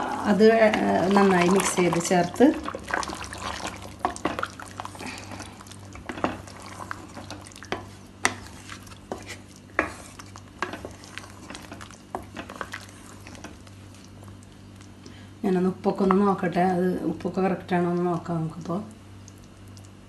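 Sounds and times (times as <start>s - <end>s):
spoon stirring curry in a pot: 0.5s - 14.2s.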